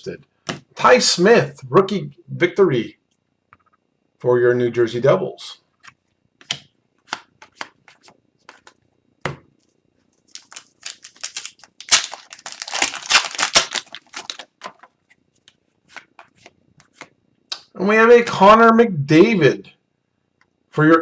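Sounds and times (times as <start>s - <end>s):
foil pack crinkling: 10.3s - 15.0s.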